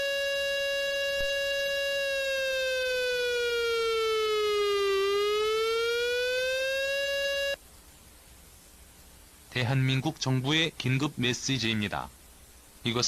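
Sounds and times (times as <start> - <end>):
sliding emergency siren tone: 0.0 - 7.6.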